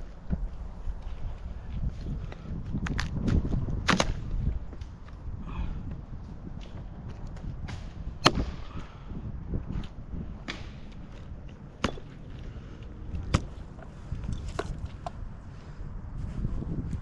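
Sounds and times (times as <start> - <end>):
steady low rumble: 0.0 - 17.0
sharp cracks: 3.8 - 4.3, 7.6 - 8.9.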